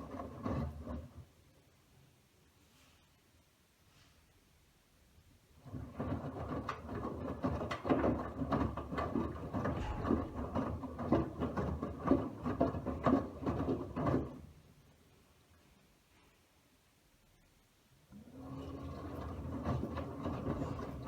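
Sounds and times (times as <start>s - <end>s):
washing machine drum sloshing: 5.6s - 14.6s, 18.4s - 21.0s
washing machine motor rumble: 5.6s - 14.8s, 18.1s - 21.0s.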